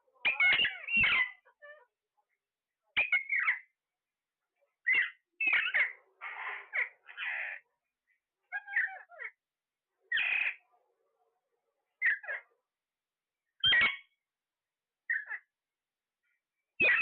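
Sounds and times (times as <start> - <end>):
parrot squawking and chirping: 0.2 - 1.9, 3.0 - 3.7, 4.8 - 7.6, 8.4 - 9.4, 10.1 - 10.6, 12.0 - 12.4, 13.6 - 14.2, 15.0 - 15.5, 16.8 - 17.0
parrot raspy screeches: 4.9 - 7.6, 10.1 - 10.6.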